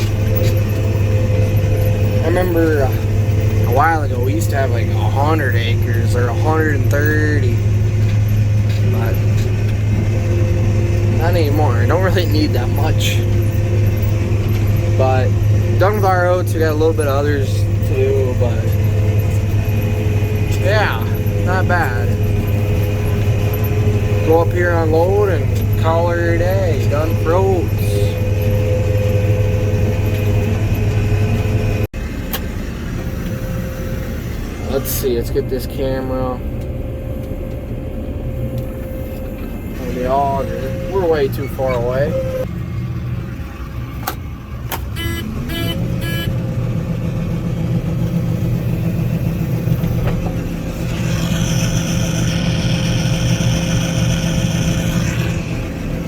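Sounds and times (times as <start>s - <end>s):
combine harvester drone: 0.0s - 56.0s
higher whine: 0.0s - 56.0s
steady whine: 0.0s - 56.0s
short electronic beeps: 45.0s - 46.3s.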